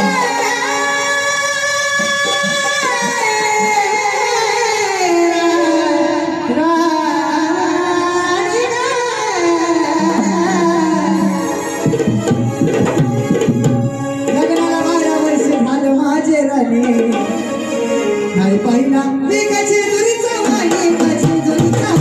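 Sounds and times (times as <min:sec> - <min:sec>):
tabla: 0:00.0 - 0:22.0
light instrumental accompaniment: 0:09.9 - 0:22.0
person singing folk song: 0:18.8 - 0:22.0.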